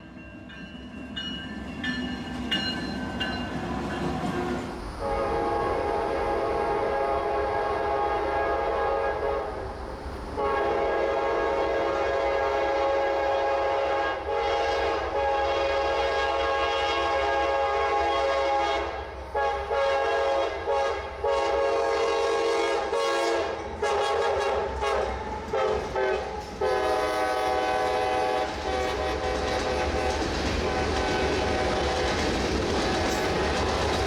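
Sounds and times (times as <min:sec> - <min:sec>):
low train rumble: 0:00.0 - 0:34.0
locomotive air horn blasts: 0:04.4 - 0:09.6, 0:10.4 - 0:32.1.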